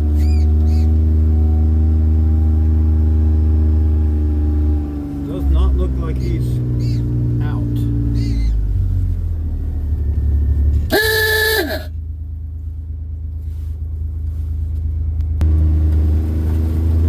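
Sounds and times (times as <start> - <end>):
vehicle droning on road: 0.0 - 17.0
car horn toot: 10.9 - 12.0.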